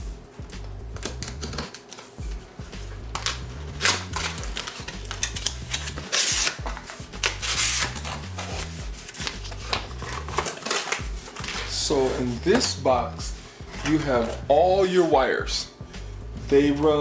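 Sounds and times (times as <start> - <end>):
background music with bass: 0.0 - 17.0
packaging clicks and rustles: 1.0 - 2.4, 3.1 - 12.8.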